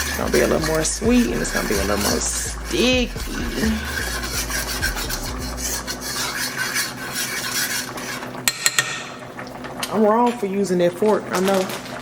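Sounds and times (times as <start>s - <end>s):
metal fork scraping a pan: 0.0s - 9.2s.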